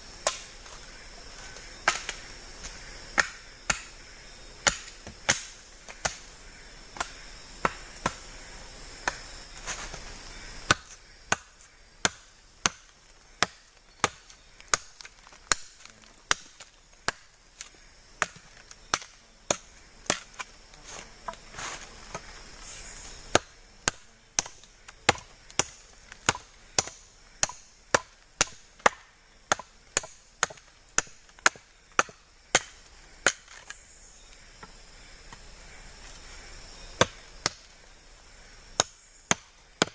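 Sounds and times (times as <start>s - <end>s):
steady high hiss: 0.0s - 24.0s, 32.5s - 39.8s.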